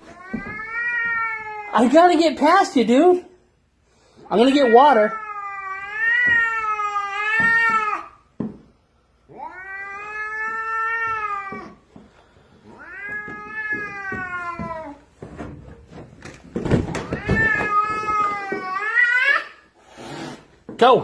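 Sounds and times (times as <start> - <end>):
cat yowling: 4.4 - 8.2, 9.3 - 11.8, 12.7 - 15.0, 17.0 - 19.6.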